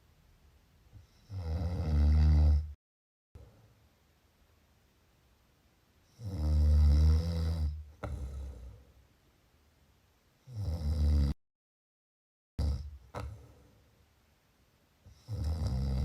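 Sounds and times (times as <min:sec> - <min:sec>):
person snoring: 0:01.0 - 0:02.8, 0:06.1 - 0:08.8, 0:10.5 - 0:11.4, 0:15.1 - 0:16.0
breath: 0:08.0 - 0:09.0.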